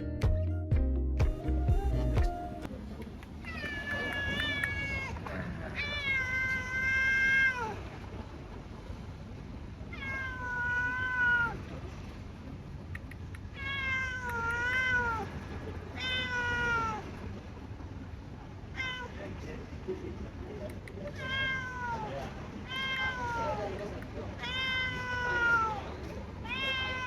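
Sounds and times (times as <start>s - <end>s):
cat meowing: 3.4s - 7.8s, 9.9s - 11.6s, 13.5s - 15.3s, 15.9s - 17.1s, 18.7s - 19.2s, 21.1s - 23.7s, 24.4s - 27.0s.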